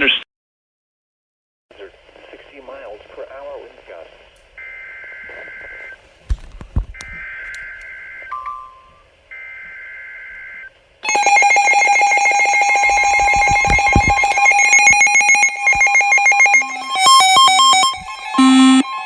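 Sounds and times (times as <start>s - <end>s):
two-tone alert signal: 11.1s - 19.0s
warbling data buzz: 12.4s - 19.0s.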